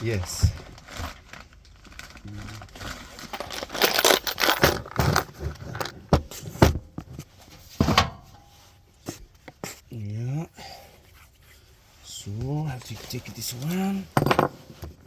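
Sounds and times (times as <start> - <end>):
metal parts knocking and scraping: 3.3 - 7.1, 7.8 - 8.4, 13.6 - 15.0.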